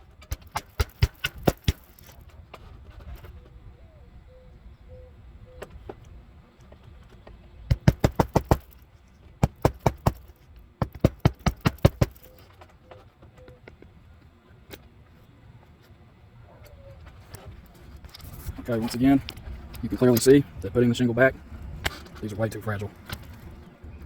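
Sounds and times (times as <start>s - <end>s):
hammer striking roofing nails: 0.2s - 2.0s, 7.7s - 8.8s, 9.4s - 12.3s.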